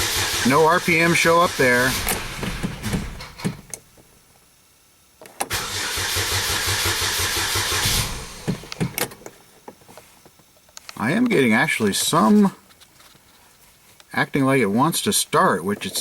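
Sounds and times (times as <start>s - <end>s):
engine cranking by starter: 0.0s - 3.7s, 5.5s - 9.2s.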